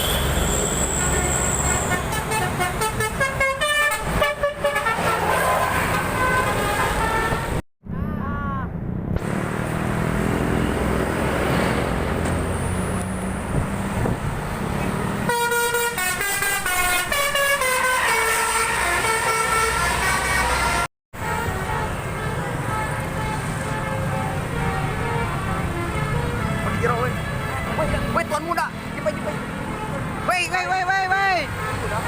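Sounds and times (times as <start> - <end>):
musical bus horn: 0.0 - 7.6, 15.2 - 28.5
bus engines rumbling: 0.0 - 32.0.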